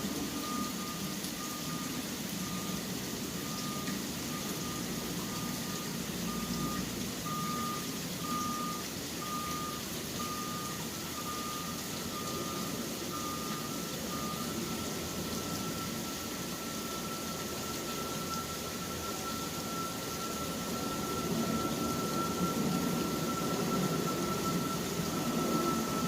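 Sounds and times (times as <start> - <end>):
low traffic rumble: 0.0 - 26.0
rain hissing: 0.0 - 26.0.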